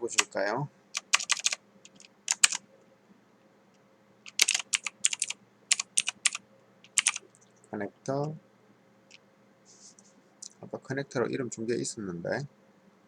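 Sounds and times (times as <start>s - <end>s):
typing on computer keyboard: 1.0s - 2.6s, 4.3s - 7.2s.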